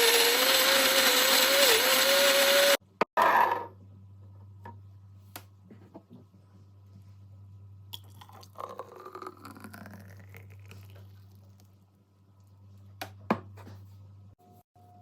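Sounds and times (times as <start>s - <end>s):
smoothie gurgling pour: 8.0s - 11.7s.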